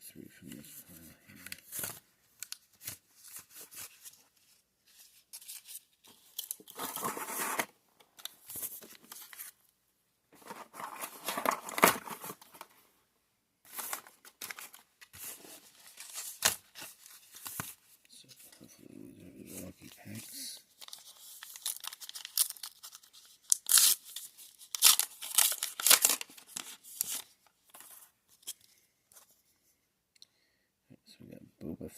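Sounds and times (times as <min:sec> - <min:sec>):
foil wrapper crinkling: 0:20.8 - 0:27.3.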